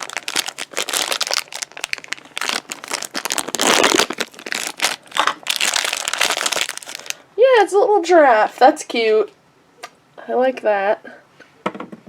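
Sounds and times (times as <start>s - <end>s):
plastic bag crinkling: 0.0s - 7.2s.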